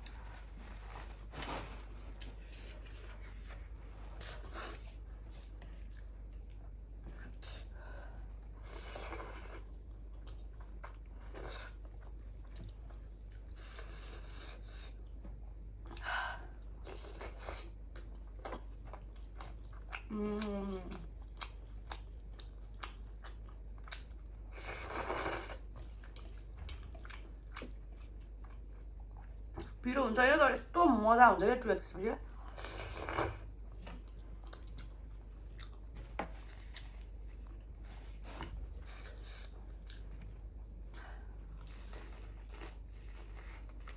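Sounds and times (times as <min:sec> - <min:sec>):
chewing and crunching food: 0:00.0 - 0:30.8, 0:32.2 - 0:43.9
person humming: 0:20.1 - 0:21.0.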